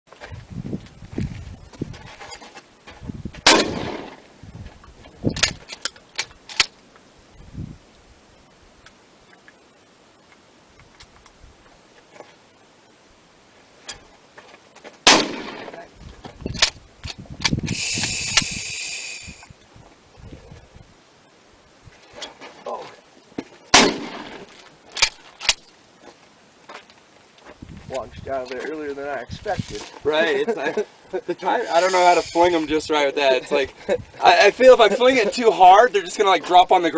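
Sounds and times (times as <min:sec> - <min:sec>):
wind buffeting microphone: 0:00.2 - 0:02.2, 0:02.9 - 0:05.7, 0:07.2 - 0:08.2, 0:15.8 - 0:21.0, 0:27.5 - 0:30.2, 0:31.9 - 0:34.8
gunshots with echo: 0:03.5 - 0:04.2, 0:15.1 - 0:15.8, 0:23.8 - 0:24.4.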